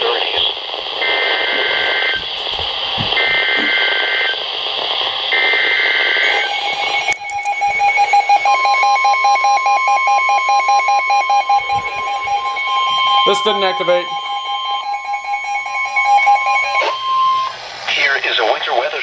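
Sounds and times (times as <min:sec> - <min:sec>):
receiver hiss: 0:00.0 - 0:08.6, 0:11.5 - 0:19.0
steady warning alarm tone: 0:00.0 - 0:18.7
rapid pulsing electronic beep: 0:03.1 - 0:04.4, 0:06.2 - 0:17.6
harsh two-pitch data warble: 0:05.7 - 0:17.6.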